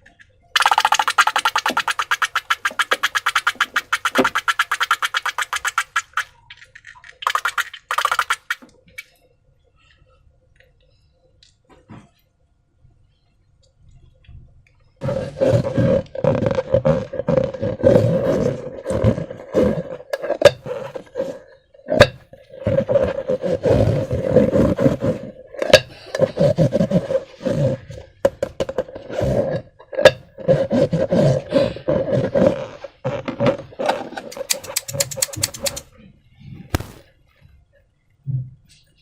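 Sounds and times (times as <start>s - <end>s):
squeaky rubber rubbing: 15.0s - 21.4s, 22.6s - 25.3s, 26.2s - 28.0s, 30.4s - 35.8s
quick clicks: 34.3s - 35.8s
balloon snaps: 36.7s - 37.1s.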